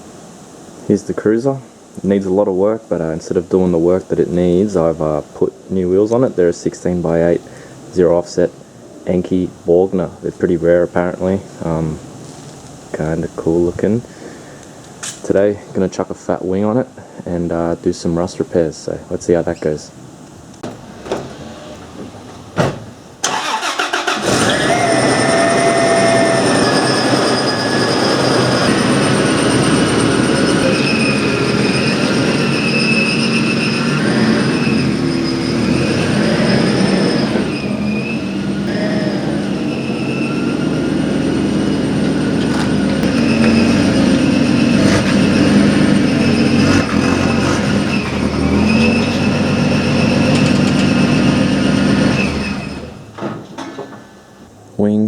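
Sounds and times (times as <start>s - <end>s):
car engine starting and running: 20.0s - 54.8s.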